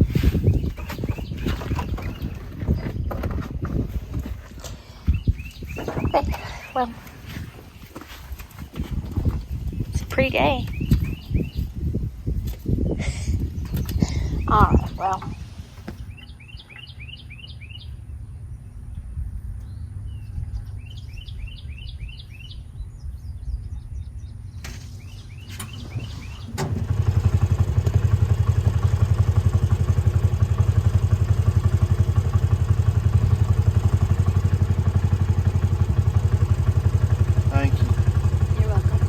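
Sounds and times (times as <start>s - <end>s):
birds chirping: 0.0s - 39.0s
tractor engine idling: 25.3s - 39.0s.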